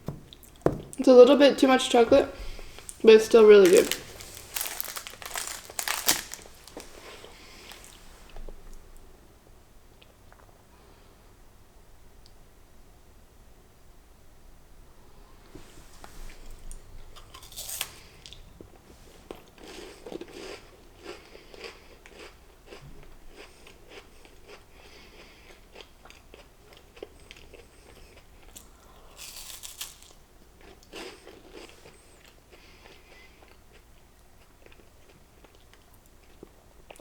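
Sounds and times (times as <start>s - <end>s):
crunchy snack chewing: 2.4s - 8.0s, 17.1s - 18.4s, 19.3s - 35.6s.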